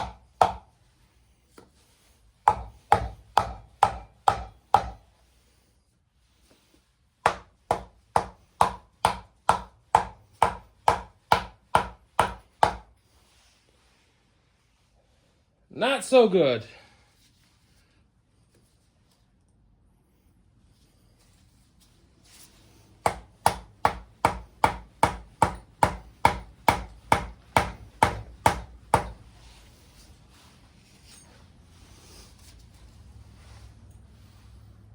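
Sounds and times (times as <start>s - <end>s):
hammer striking wooden block: 0.0s - 0.7s, 2.4s - 5.1s, 7.2s - 12.9s, 23.0s - 29.2s.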